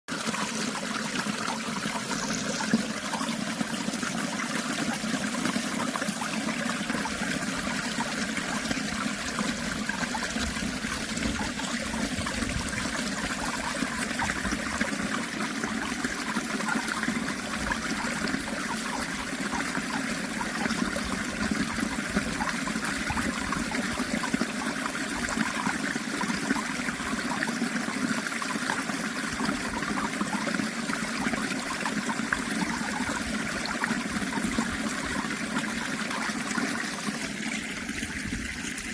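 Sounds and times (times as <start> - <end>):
stream water flowing: 0.1 - 38.9.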